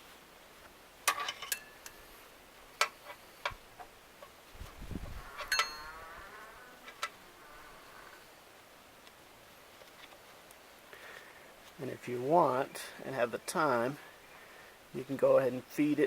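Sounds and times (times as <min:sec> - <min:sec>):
faint ringing tone: 0:05.4 - 0:06.1.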